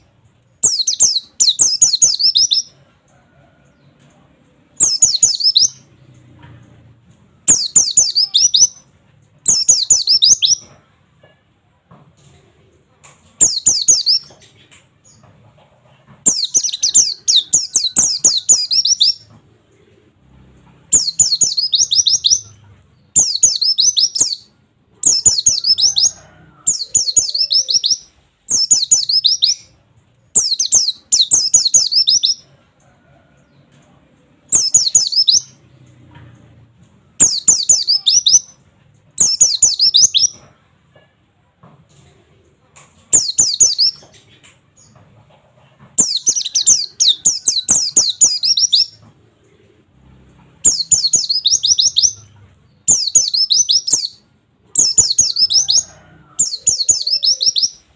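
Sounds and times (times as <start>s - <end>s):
bird singing rapid high notes: 0.6s - 2.7s, 4.8s - 5.8s, 7.4s - 8.8s, 9.5s - 10.6s, 21.0s - 29.7s, 30.4s - 32.4s, 34.5s - 35.6s, 37.2s - 38.5s, 50.7s - 52.3s, 52.9s - 54.2s, 54.8s - 57.8s.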